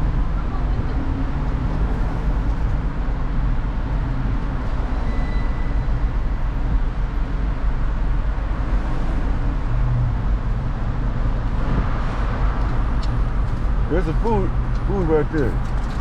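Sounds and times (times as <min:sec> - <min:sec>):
car driving low rumble: 0:05.7 - 0:16.0.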